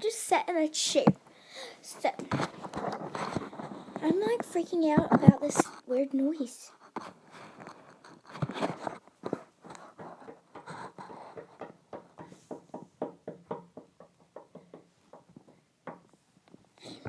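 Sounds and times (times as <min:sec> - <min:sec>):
light rapid taps: 0:08.3 - 0:16.6.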